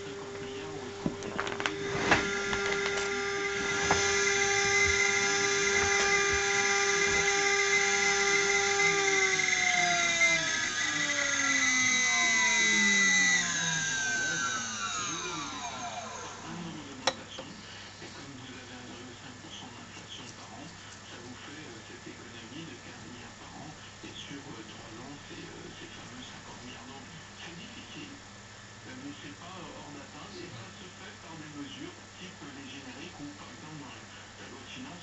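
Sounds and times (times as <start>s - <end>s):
electric motor whine spinning down: 0.0s - 17.2s.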